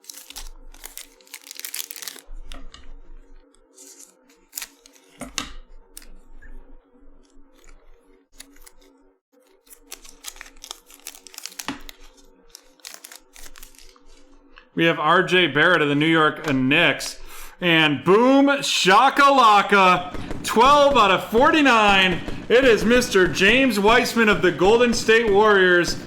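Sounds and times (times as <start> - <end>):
card wrappers tearing and crinkling: 0.0 - 2.8, 3.5 - 6.2, 7.4 - 14.5.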